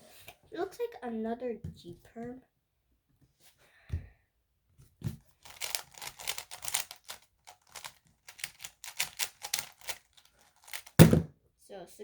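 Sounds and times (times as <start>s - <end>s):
puzzle cube plastic clicks: 5.4s - 11.2s.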